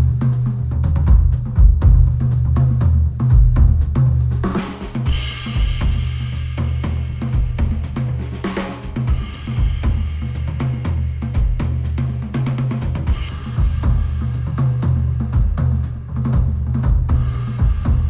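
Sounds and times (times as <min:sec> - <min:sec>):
heavy bass line: 0:00.0 - 0:18.0
music with drum kit: 0:00.0 - 0:18.0
cymbal crashes: 0:04.6 - 0:08.0, 0:13.0 - 0:15.2.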